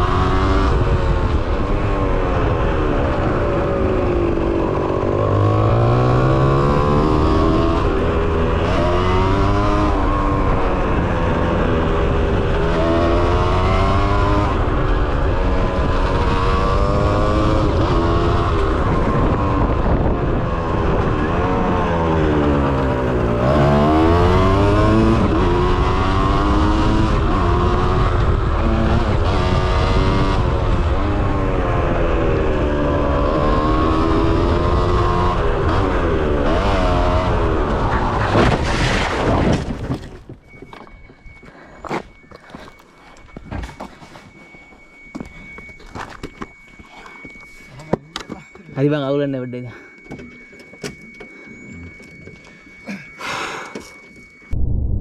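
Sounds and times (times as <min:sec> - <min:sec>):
dirt bike engine revving: 0:00.0 - 0:39.4.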